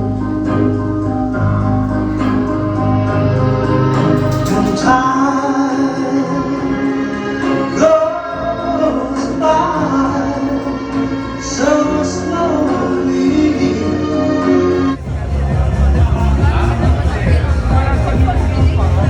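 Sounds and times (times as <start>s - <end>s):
sustained organ backing: 0.0s - 19.0s
man singing: 3.9s - 19.0s.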